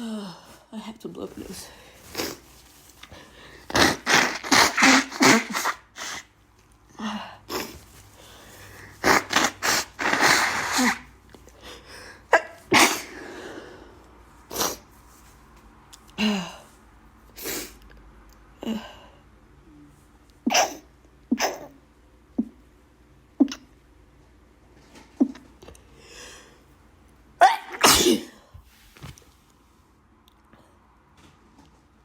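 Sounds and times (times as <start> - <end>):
woman sneezing: 3.7 - 6.3, 9.0 - 11.1, 12.3 - 13.2, 20.5 - 21.8, 27.4 - 28.5.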